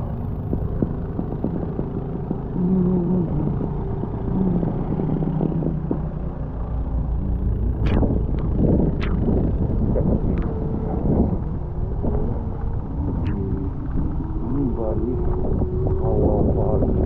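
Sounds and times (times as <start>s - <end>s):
short humming tone: 0.0s - 15.9s
wind noise on microphone: 6.9s - 17.0s
sharp clicks: 7.7s - 9.4s.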